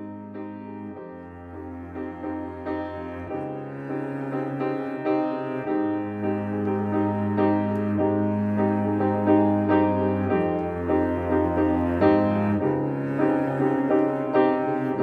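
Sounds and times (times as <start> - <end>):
piano playing chords: 0.0 - 15.0.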